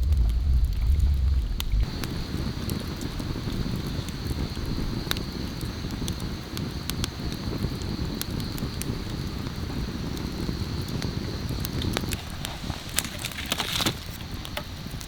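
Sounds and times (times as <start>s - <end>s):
low rumbling noise: 0.0s - 5.5s
campfire crackling and popping: 0.0s - 15.0s.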